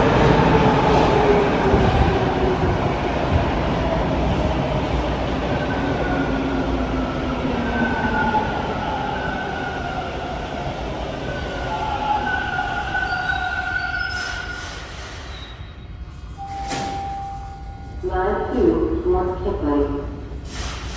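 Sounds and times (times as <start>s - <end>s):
wheels rumbling on rail: 0.0s - 15.4s
subway train motors whining: 0.0s - 20.9s.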